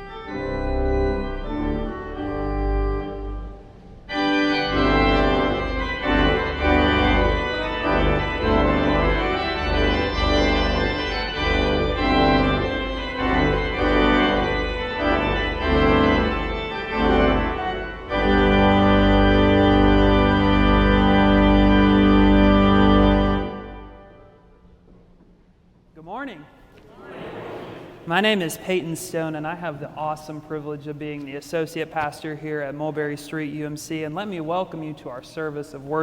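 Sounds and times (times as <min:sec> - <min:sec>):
church organ playing chords: 0:00.0 - 0:24.7.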